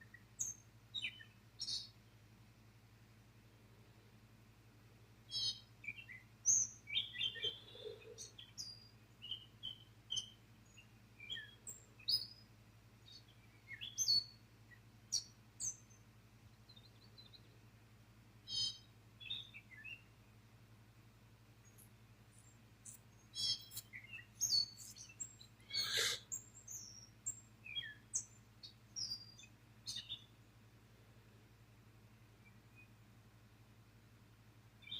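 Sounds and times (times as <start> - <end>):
faint low hum: 0.0 - 34.9
birds chirping and whistling: 5.3 - 10.3, 23.4 - 27.1.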